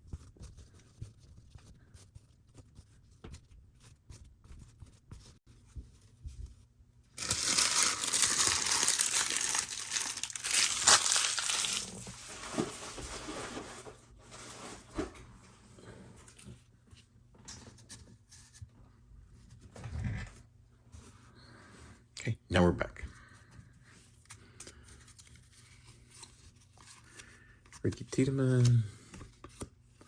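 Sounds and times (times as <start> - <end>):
foil wrapper clicks and rustles: 7.2 - 12.3
foil wrapper crinkling and tearing: 7.2 - 12.7.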